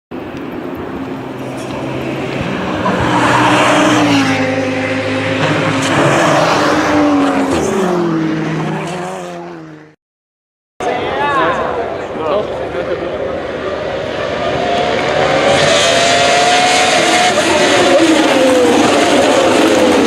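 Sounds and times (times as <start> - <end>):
race car engines at high revs: 0.7 - 10.0, 13.4 - 20.0.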